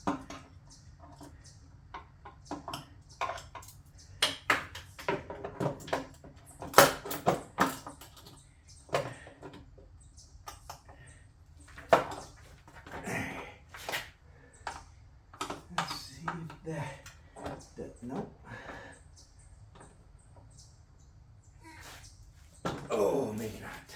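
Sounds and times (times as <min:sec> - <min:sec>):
hand tools clinking on metal: 0:15.4 - 0:17.7.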